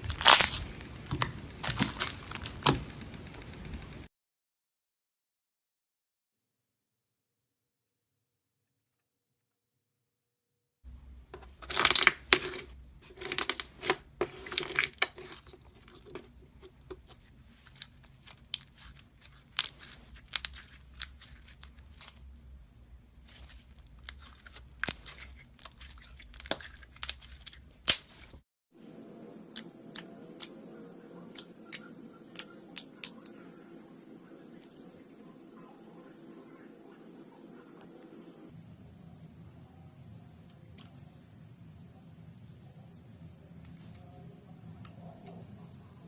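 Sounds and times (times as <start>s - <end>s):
slime crackling and popping: 0.0s - 3.5s, 11.6s - 22.2s, 23.2s - 28.4s
steady background hum: 0.0s - 4.1s, 10.9s - 46.0s.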